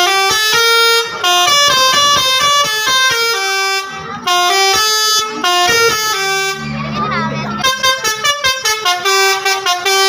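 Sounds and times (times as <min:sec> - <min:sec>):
musical air horn melody: 0:00.0 - 0:10.0.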